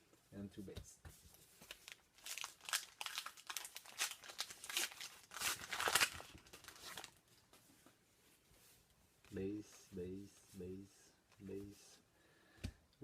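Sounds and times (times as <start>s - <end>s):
plastic wrapper crinkling and tearing: 1.7s - 7.2s.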